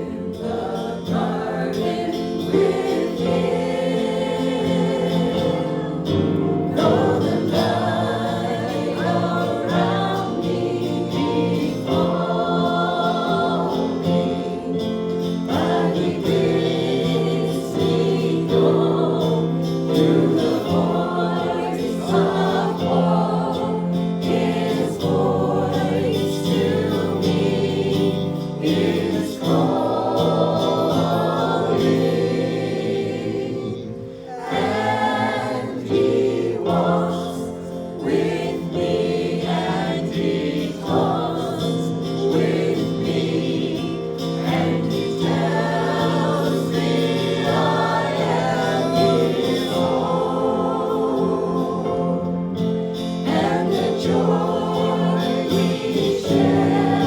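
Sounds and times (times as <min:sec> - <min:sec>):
gospel voices singing: 0:00.0 - 0:57.0
held accompanying notes: 0:00.0 - 0:57.0.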